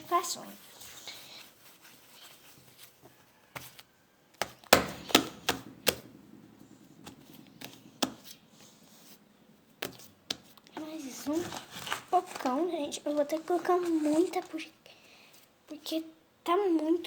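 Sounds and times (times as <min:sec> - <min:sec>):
taps and clicks mixing slime: 0:03.5 - 0:06.2, 0:07.0 - 0:10.9.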